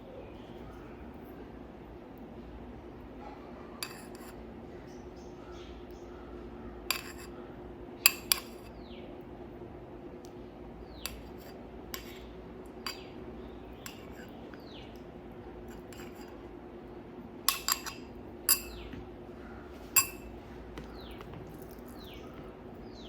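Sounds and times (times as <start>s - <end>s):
steady low hum: 0.0s - 23.0s
tableware clinking on dishes: 3.8s - 4.4s, 6.9s - 7.4s, 8.1s - 8.7s, 11.0s - 12.2s, 13.8s - 14.3s, 15.7s - 16.4s, 17.5s - 19.0s, 19.9s - 20.4s.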